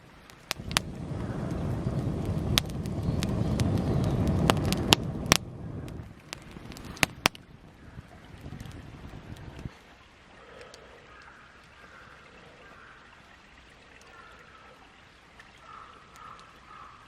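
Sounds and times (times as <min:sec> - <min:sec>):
campfire crackling and popping: 0:00.0 - 0:09.7
low rushing roar: 0:00.5 - 0:09.7.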